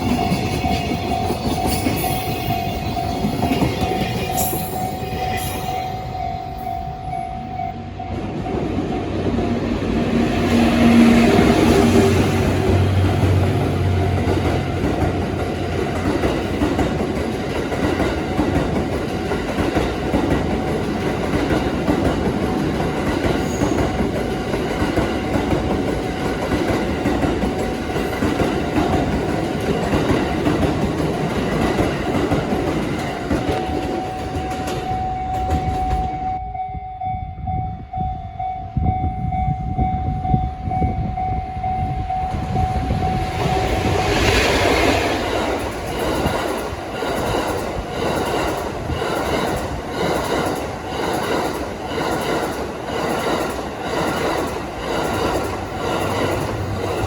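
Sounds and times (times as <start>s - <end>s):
crossing warning tone: 0.0s - 46.8s
train wheels clattering over rails: 10.5s - 36.4s, 42.3s - 57.0s.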